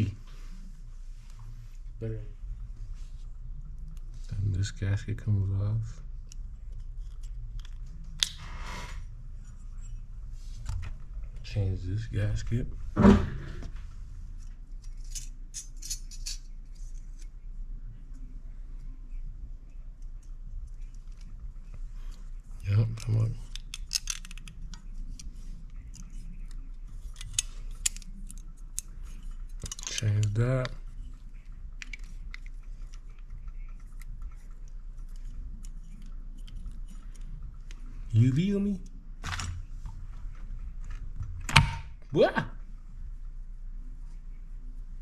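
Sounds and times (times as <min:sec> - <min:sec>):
low steady hum: 0:00.0 - 0:45.0
small parts clicking and clinking: 0:14.4 - 0:17.2, 0:22.5 - 0:37.9.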